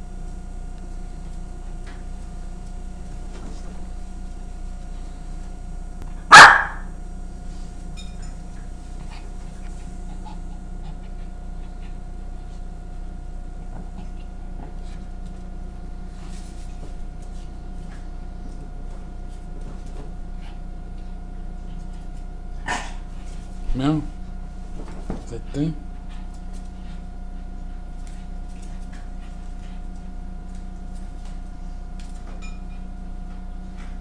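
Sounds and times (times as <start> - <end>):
faint steady hum: 0.0 - 34.0
dog barking: 6.3 - 6.9.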